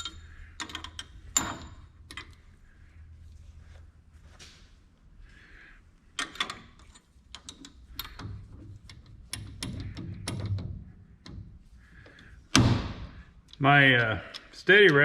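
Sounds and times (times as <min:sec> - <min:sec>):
metallic clicks and clanks of tools: 0:00.0 - 0:02.4, 0:06.2 - 0:12.6.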